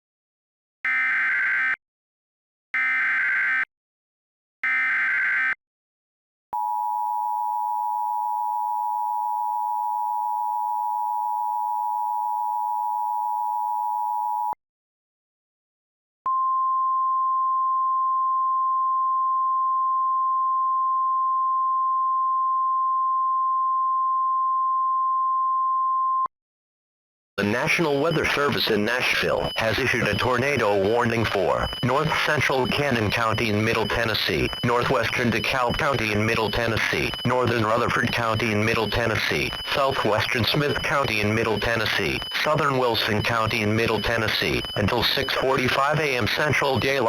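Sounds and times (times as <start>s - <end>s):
data bursts: 27.4s - 47.0s
steady warning tone: 27.4s - 47.0s
two-tone attention signal: 27.4s - 47.0s.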